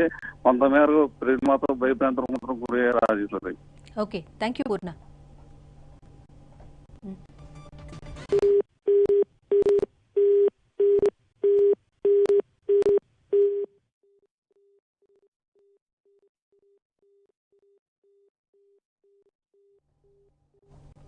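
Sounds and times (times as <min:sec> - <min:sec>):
telephone busy tone beeps: 0:08.3 - 0:13.7.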